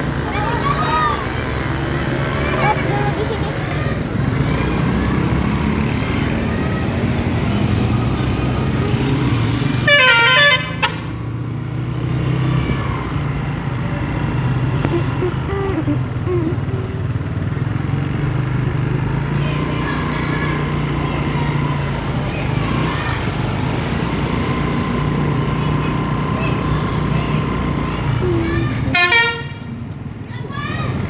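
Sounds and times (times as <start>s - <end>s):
multi-tone bus horn: 8.7s - 11.4s, 28.9s - 29.9s
horn short toot: 28.2s - 29.7s.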